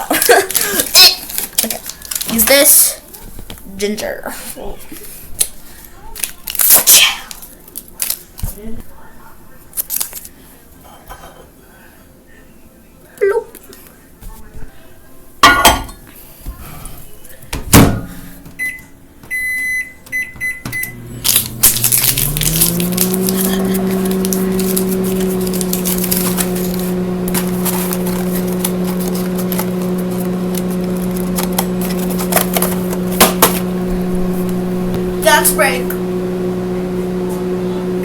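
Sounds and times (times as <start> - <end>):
microwave oven hum: 17.8 - 38.0.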